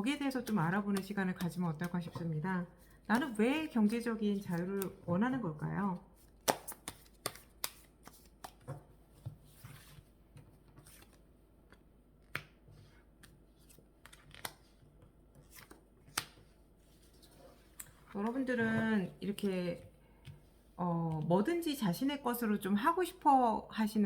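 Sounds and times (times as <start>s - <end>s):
cards being shuffled: 6.4s - 8.8s, 13.2s - 14.8s.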